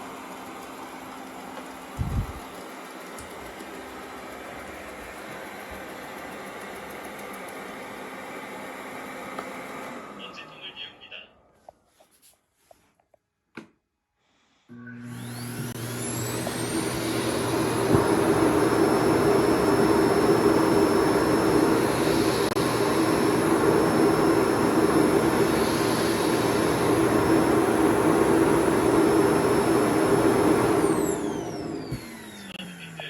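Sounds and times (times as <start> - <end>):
robot vacuum motor whining: 14.7 - 33.0.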